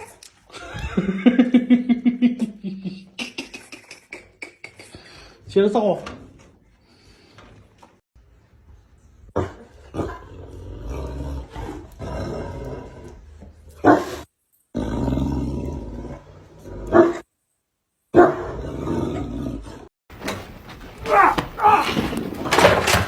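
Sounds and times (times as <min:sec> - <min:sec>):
dog growling: 0:14.0 - 0:17.2, 0:18.3 - 0:23.0.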